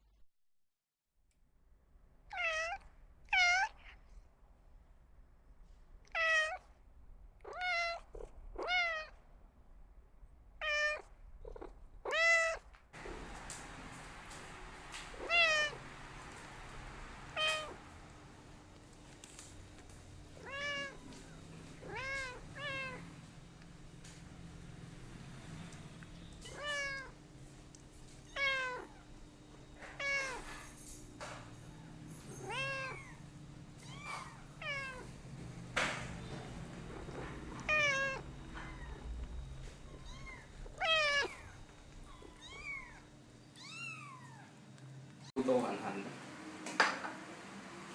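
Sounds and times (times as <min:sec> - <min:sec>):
cat meowing: 0:02.3 - 0:04.1, 0:06.0 - 0:06.8, 0:07.4 - 0:09.2, 0:10.6 - 0:13.2, 0:15.0 - 0:15.9, 0:17.3 - 0:17.8, 0:20.3 - 0:23.2, 0:26.2 - 0:27.2, 0:28.2 - 0:29.1, 0:29.8 - 0:30.6, 0:32.2 - 0:35.2, 0:36.2 - 0:44.5.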